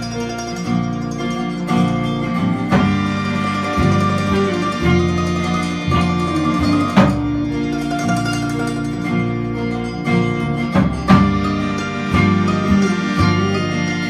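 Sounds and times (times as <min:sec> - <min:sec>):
bluegrass band playing: 0:00.0 - 0:14.0
sharp hit: 0:02.3 - 0:10.0, 0:10.6 - 0:14.0.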